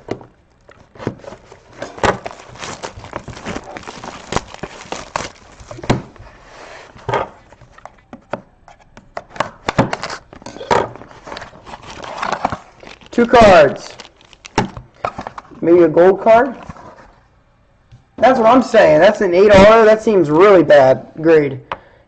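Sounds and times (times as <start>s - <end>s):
cardboard scraping: 0.1s - 8.0s, 8.7s - 13.3s
crinkling wrapper: 0.4s - 6.3s, 11.1s - 15.6s.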